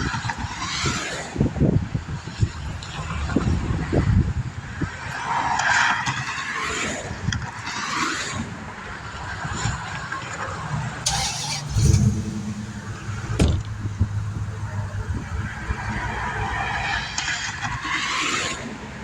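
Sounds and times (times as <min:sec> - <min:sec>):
passing traffic: 0:00.0 - 0:19.0
heavy vehicle engine drone: 0:10.8 - 0:19.0.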